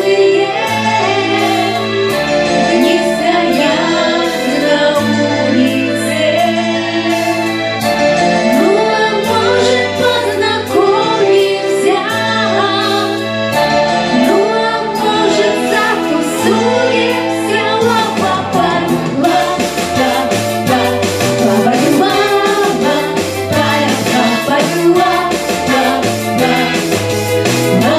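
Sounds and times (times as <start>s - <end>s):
instrumental accompaniment with beat: 0.0s - 27.9s
person singing: 14.1s - 27.0s, 27.7s - 27.9s.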